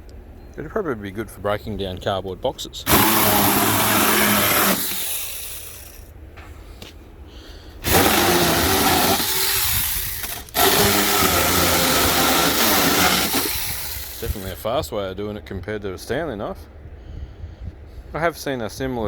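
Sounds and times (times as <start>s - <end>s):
electric chainsaw cutting cardboard: 2.9s - 6.1s, 7.8s - 14.6s.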